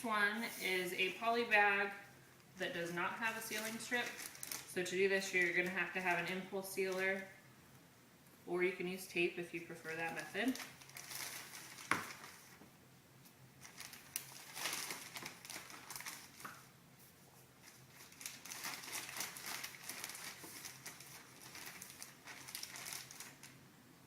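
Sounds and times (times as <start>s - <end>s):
plastic bag rustling: 2.7s - 7.2s, 9.7s - 12.6s, 13.6s - 23.6s.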